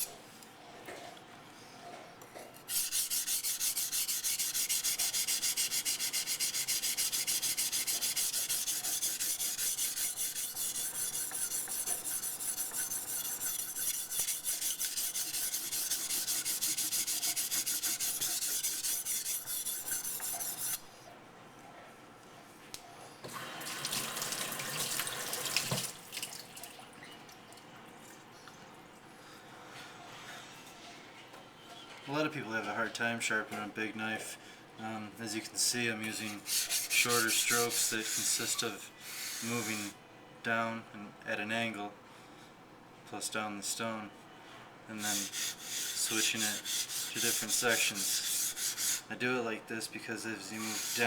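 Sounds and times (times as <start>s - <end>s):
knife scraping on whetstone: 2.6s - 20.9s, 36.1s - 39.9s, 45.0s - 49.1s, 50.6s - 51.0s.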